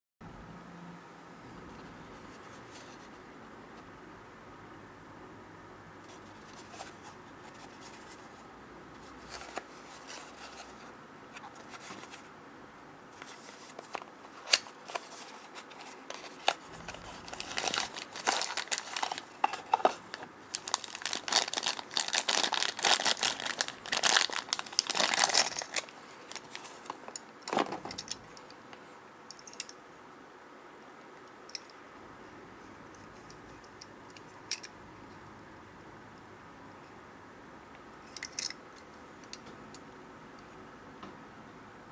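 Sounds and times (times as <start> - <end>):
paper or plastic crinkling: 13.2 - 28.2.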